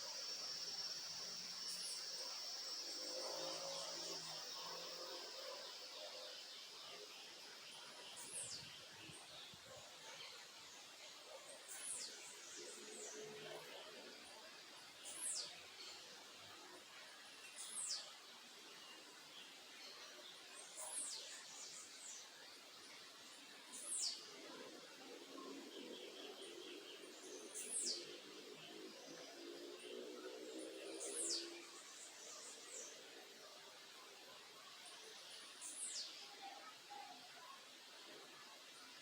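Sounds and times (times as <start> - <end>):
steady background hiss: 0.0 - 13.2.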